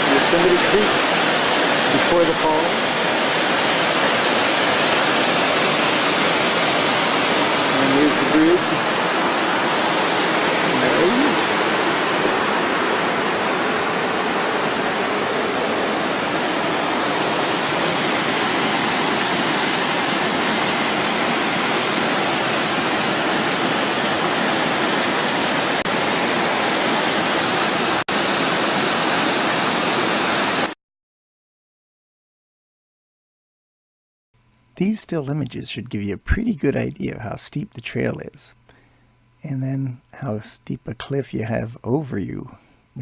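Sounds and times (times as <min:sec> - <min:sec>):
water rushing: 0:00.0 - 0:30.7.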